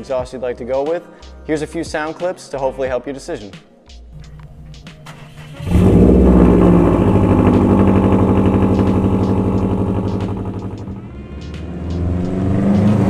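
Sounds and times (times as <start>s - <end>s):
car engine starting up: 4.2s - 13.0s.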